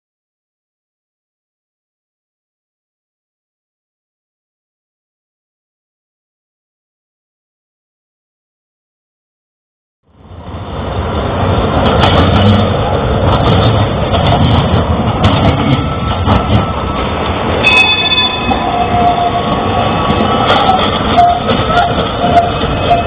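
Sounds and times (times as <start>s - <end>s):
tram rumbling on track: 10.1s - 23.0s
wheels clicking and knocking: 11.7s - 17.6s, 18.3s - 23.0s
brief high tones: 17.6s - 19.2s.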